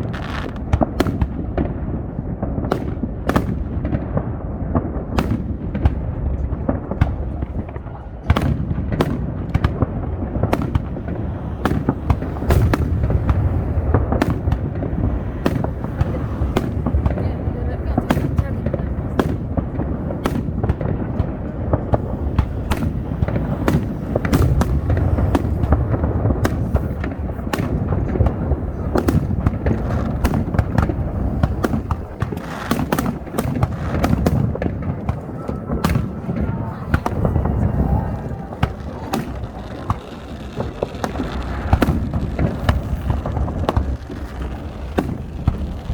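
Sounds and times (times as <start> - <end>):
constant low rumble: 0.0 - 45.9
fireworks cracking and booming: 0.0 - 45.9
low rumble: 33.2 - 45.9.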